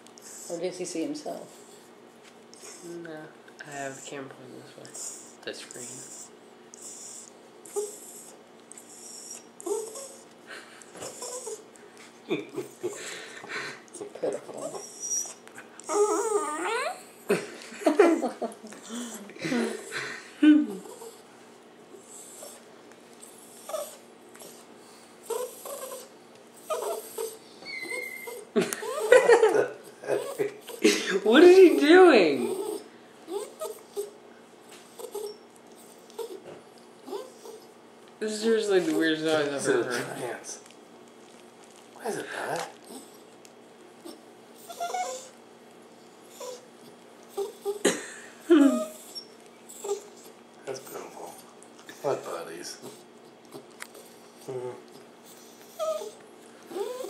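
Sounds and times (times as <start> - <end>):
dog whining: 6.0 - 10.3, 11.0 - 11.7, 13.9 - 17.3, 22.0 - 22.6, 23.3 - 29.4, 30.1 - 30.8, 31.5 - 34.2, 34.9 - 37.8, 44.0 - 45.4, 46.3 - 46.7, 47.3 - 47.9, 48.5 - 50.4, 52.8 - 57.0.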